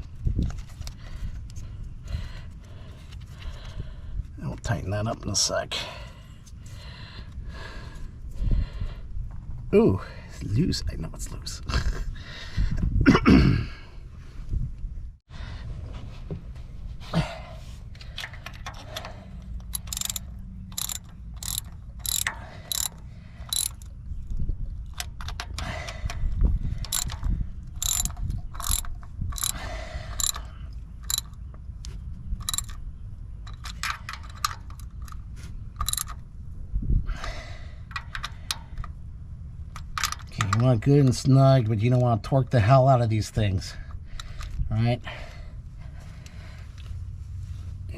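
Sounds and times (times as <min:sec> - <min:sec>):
steady low rumble: 0:00.0 - 0:04.4, 0:05.5 - 0:41.8
ratchet wrench clicking: 0:19.6 - 0:23.9, 0:26.8 - 0:31.4, 0:32.4 - 0:32.8, 0:33.4 - 0:35.2, 0:35.8 - 0:36.2.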